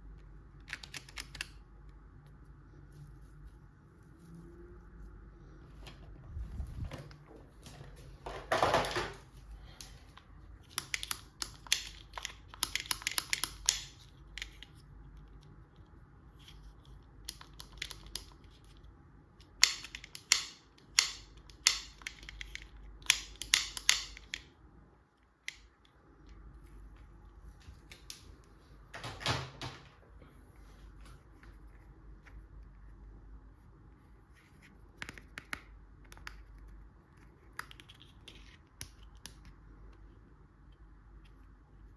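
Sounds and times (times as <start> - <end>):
sharp plastic clicks: 10.6 - 14.8, 19.4 - 24.5.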